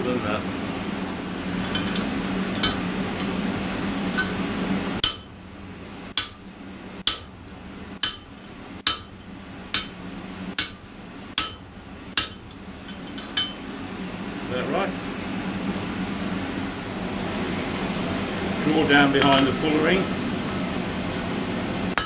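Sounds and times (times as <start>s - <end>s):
steady low hum: 0.0s - 22.0s
hammer striking steel on anvil: 5.0s - 5.4s, 6.2s - 7.4s, 8.0s - 10.0s, 10.6s - 13.6s.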